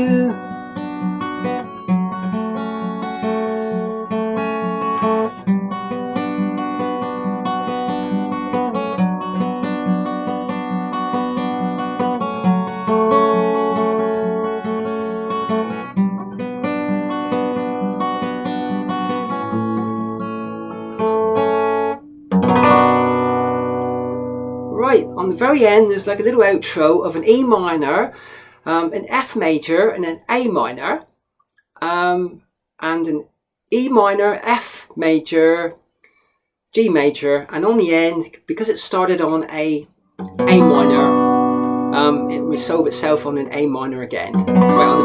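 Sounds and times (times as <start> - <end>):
finger-picked acoustic guitar: 0.0 - 27.9, 40.2 - 45.0.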